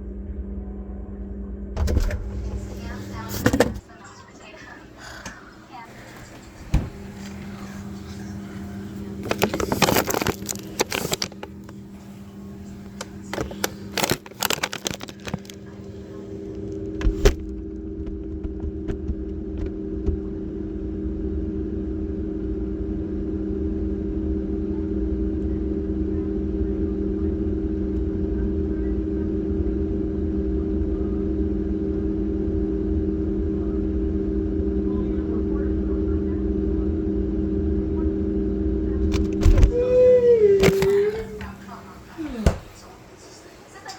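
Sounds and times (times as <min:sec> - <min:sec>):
refrigerator hum and rumble: 0:00.0 - 0:43.9
refrigerator door knock: 0:06.6 - 0:07.5, 0:42.3 - 0:42.8
phone clattering and rattling: 0:08.8 - 0:11.8, 0:12.9 - 0:15.7.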